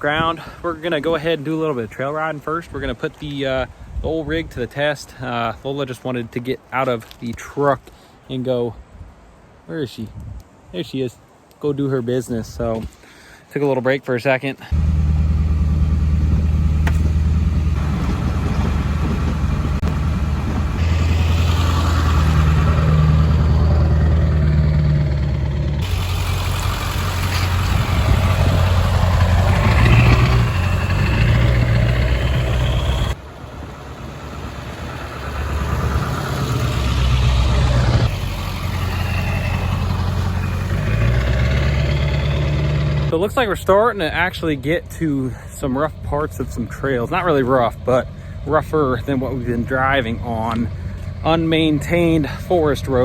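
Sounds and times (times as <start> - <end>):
pickup truck engine driving: 14.7 - 53.0.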